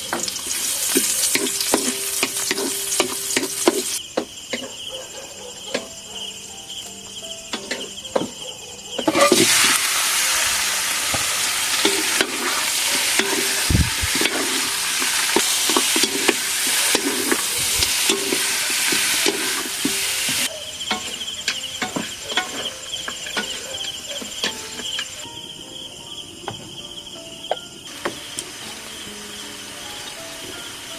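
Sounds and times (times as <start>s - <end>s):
chicken sizzling in a hot pan: 0.0s - 4.0s, 9.1s - 23.7s, 27.9s - 30.9s
crickets chirping: 0.0s - 30.9s
stirring knocks and scrapes: 11.1s - 25.1s.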